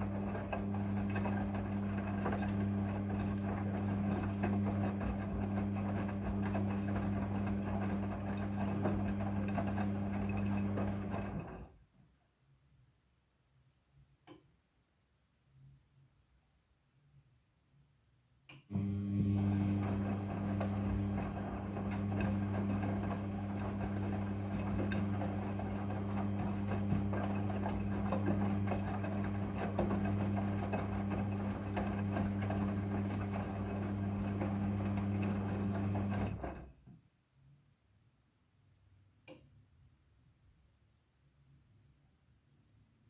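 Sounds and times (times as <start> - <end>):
washing machine humming: 0.0 - 11.7, 18.7 - 36.7.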